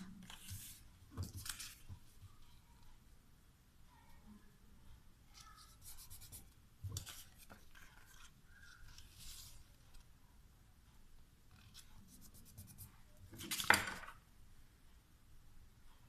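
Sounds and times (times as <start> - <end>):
faint paper rustling: 0.0 - 3.0, 5.3 - 10.2.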